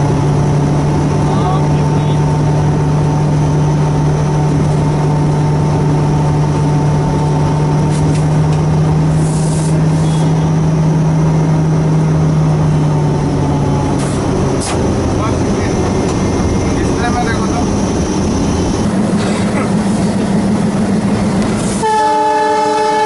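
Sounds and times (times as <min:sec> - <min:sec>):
diesel locomotive engine chugging: 0:00.0 - 0:23.0.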